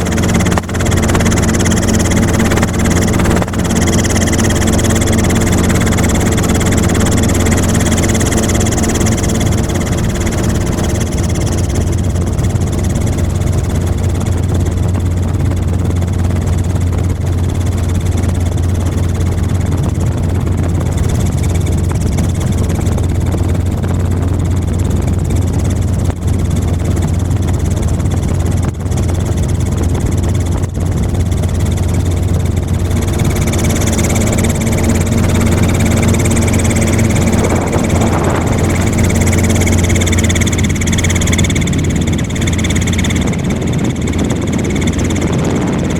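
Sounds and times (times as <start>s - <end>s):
helicopter drone: 0.0s - 45.9s.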